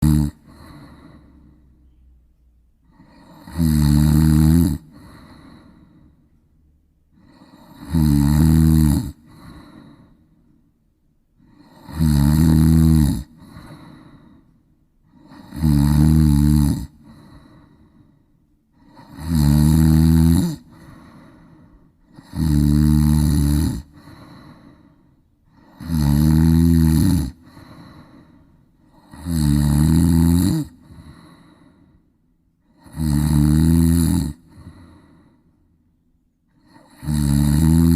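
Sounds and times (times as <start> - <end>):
person snoring: 0.0 - 1.8, 2.8 - 6.2, 7.1 - 10.4, 11.4 - 32.0, 32.6 - 35.4, 36.5 - 37.9
breathing out: 0.4 - 1.7, 4.9 - 6.2, 20.7 - 21.9, 23.9 - 25.7, 27.4 - 28.6.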